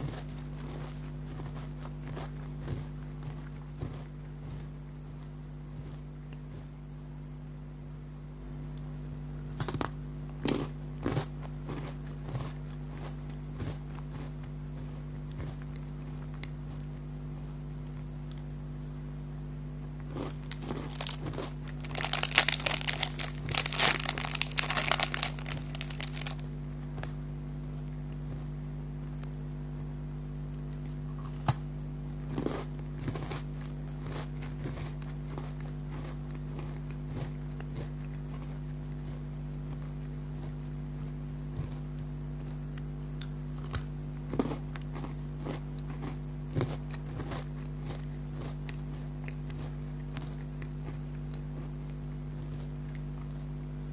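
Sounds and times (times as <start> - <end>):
crunchy bites: 0.0 - 6.8, 9.4 - 18.5, 19.9 - 29.5, 30.5 - 53.5
low hum: 0.0 - 53.9
food wrapper crinkling and tearing: 20.2 - 26.4.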